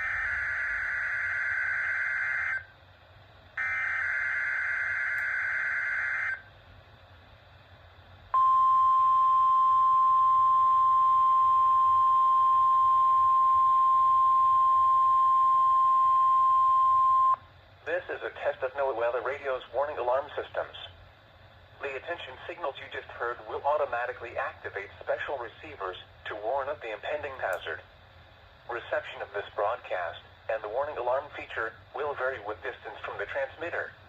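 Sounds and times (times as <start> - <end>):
steady warning alarm tone: 0.0 - 2.7, 3.6 - 6.5, 8.4 - 17.4.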